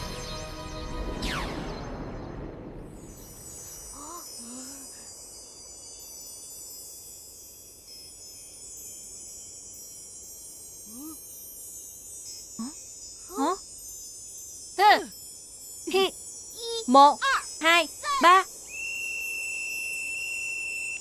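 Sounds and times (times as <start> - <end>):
shimmering wind chime effect: 2.8 - 21.0
cartoon child exclaiming: 16.0 - 18.5.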